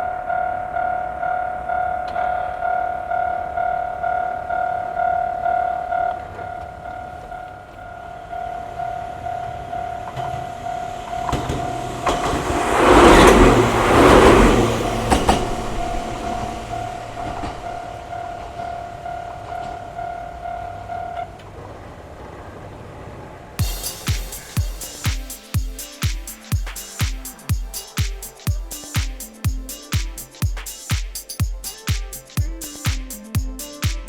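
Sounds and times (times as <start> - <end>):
level-crossing warning bell: 0.0 - 21.4, 23.6 - 30.9
electric train passing: 0.0 - 33.8
wheels clicking over rail joints: 10.1 - 20.5.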